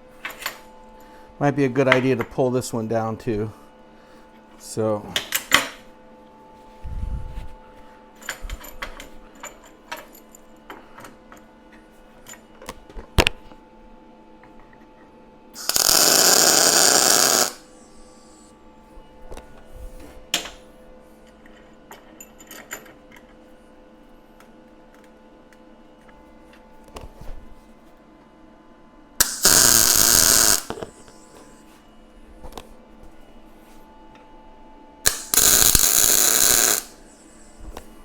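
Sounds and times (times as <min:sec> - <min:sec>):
welding arc crackling: 0:15.6 - 0:17.9, 0:29.2 - 0:31.4, 0:35.1 - 0:37.5.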